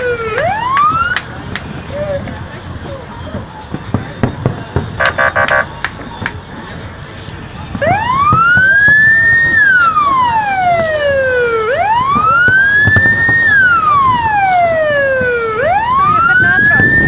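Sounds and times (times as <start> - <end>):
electronic siren wailing: 0.0 - 1.2, 5.0 - 5.7, 7.8 - 17.0.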